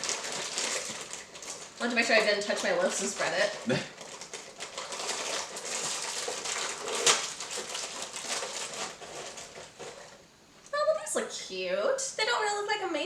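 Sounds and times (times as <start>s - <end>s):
plastic packaging crinkling: 0.0s - 10.2s.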